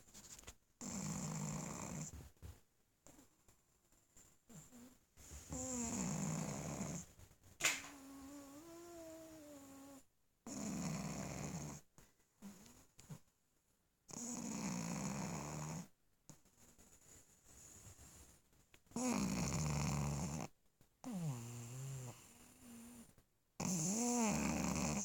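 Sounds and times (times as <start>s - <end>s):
dog snoring: 0.8s - 2.2s, 4.5s - 7.1s, 7.9s - 13.2s, 14.1s - 16.4s, 18.9s - 25.0s.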